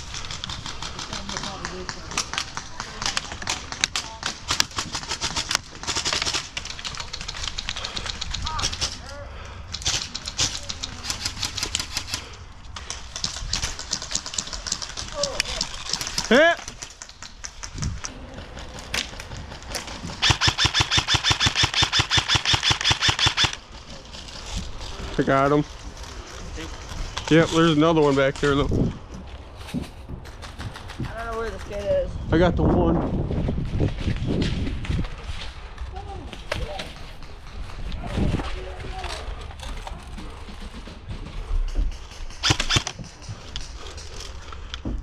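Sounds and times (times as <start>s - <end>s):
airsoft guns firing: 0.1s - 9.0s, 19.2s - 23.6s, 42.3s - 43.2s.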